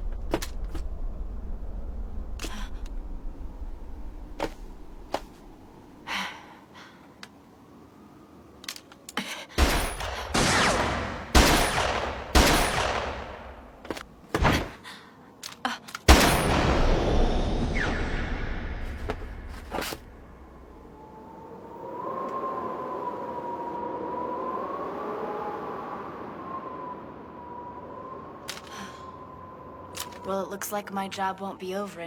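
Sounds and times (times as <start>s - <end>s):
loud blasts: 9.6s - 13.8s, 16.1s - 20.2s.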